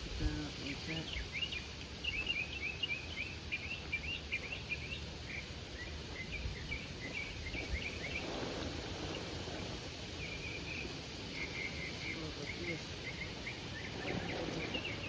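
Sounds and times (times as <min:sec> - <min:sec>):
low outdoor rumble: 0:00.0 - 0:15.0
small bird chirping: 0:00.2 - 0:15.0
soft rustle: 0:05.4 - 0:15.0.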